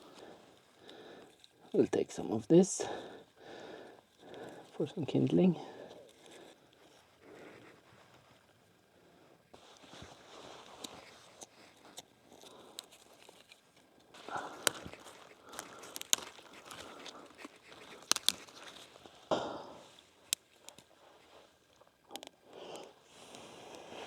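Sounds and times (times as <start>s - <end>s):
dry twigs rustling and crunching: 0.0s - 8.5s, 9.6s - 22.4s
twigs snapping: 10.8s - 20.9s, 21.7s - 22.4s.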